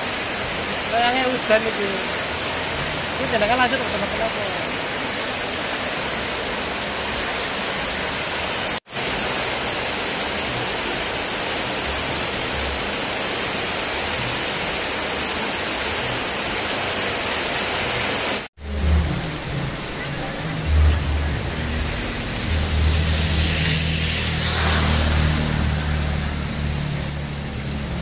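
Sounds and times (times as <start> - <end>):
heavy rain falling: 0.0 - 28.0.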